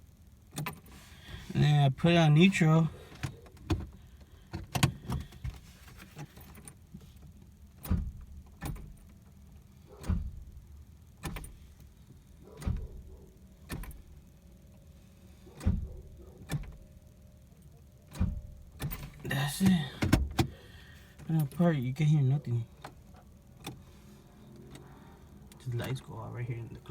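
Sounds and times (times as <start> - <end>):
faint steady hum: 0.0 - 26.9
car ignition clicks: 0.5 - 0.9, 3.1 - 14.3, 15.5 - 17.0, 18.1 - 22.0, 22.7 - 23.9.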